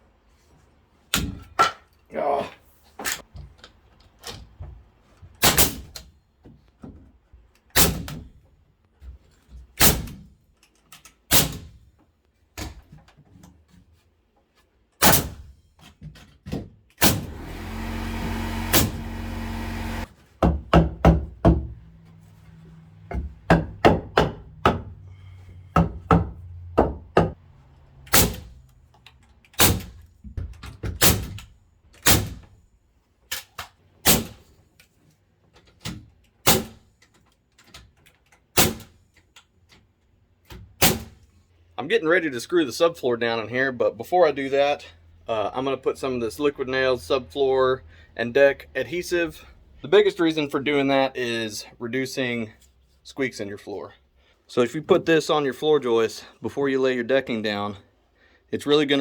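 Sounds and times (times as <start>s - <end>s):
nails driven into wood: 5.4s - 6.0s, 7.7s - 8.2s, 11.3s - 11.8s, 15.0s - 15.4s, 16.4s - 21.8s, 23.1s - 24.9s, 28.1s - 28.6s, 29.5s - 32.5s, 33.3s - 34.5s, 35.8s - 36.8s, 38.5s - 39.0s, 40.5s - 41.2s
tool running steadily: 17.1s - 20.2s.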